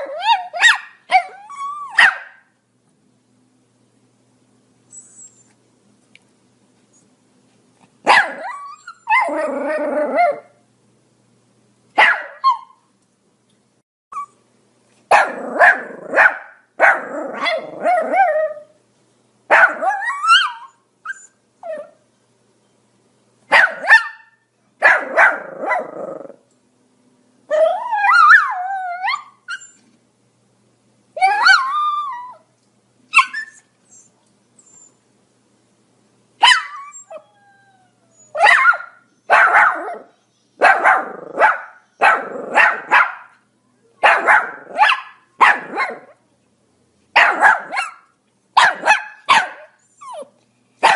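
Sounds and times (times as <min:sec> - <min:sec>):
small dog barking: 0:00.0 - 0:02.5, 0:08.0 - 0:09.3, 0:12.0 - 0:12.8, 0:15.1 - 0:18.3, 0:19.5 - 0:20.7, 0:23.5 - 0:26.0, 0:36.4 - 0:36.8, 0:38.4 - 0:43.4, 0:44.0 - 0:46.2, 0:47.1 - 0:50.9.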